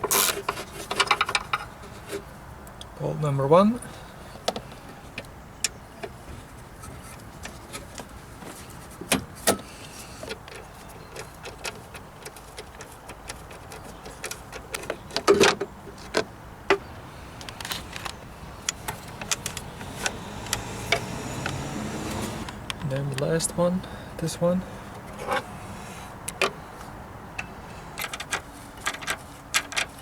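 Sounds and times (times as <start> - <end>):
bolts rattling: 11.2 - 23.2
hand tool clicks and knocks: 17.4 - 21.6.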